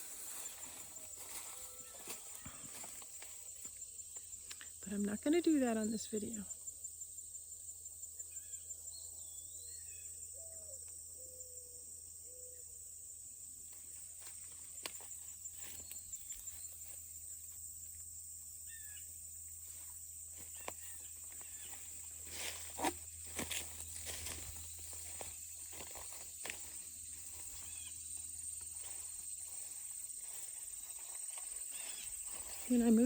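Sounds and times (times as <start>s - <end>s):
rustling through tall plants: 0.0s - 3.4s, 19.8s - 33.0s
footsteps: 0.0s - 3.8s, 19.7s - 33.0s
insect chorus trilling: 0.0s - 33.0s.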